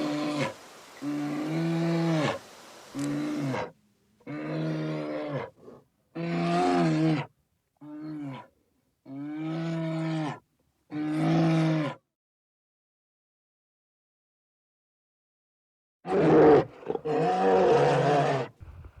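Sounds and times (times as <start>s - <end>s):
animal calling: 0.0s - 3.7s.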